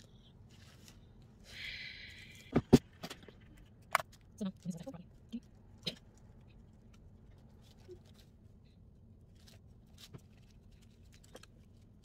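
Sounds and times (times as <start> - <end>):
faint soft clicks and rustles: 3.1 - 12.0.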